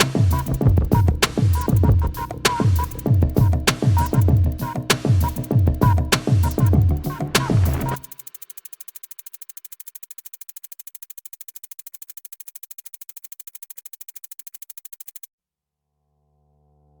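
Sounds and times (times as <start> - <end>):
loud electronic music: 0.0 - 8.2
rapid electronic ticking: 0.0 - 15.3.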